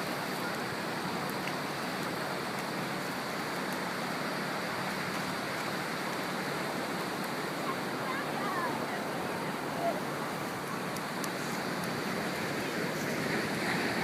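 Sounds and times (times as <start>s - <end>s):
ocean surf on beach: 0.0s - 14.0s.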